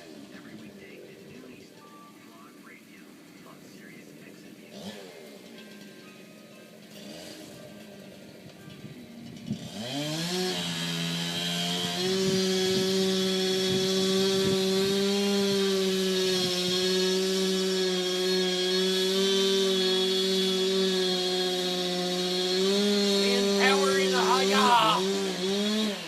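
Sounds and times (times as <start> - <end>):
chainsaw engine revving: 4.7 - 5.5, 6.8 - 8.1, 9.4 - 26.0.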